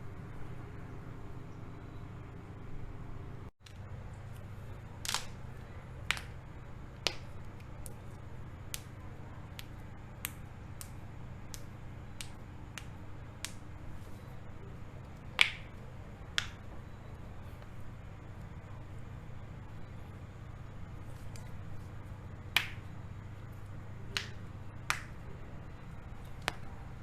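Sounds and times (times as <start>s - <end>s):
faint low hum: 0.0s - 27.0s.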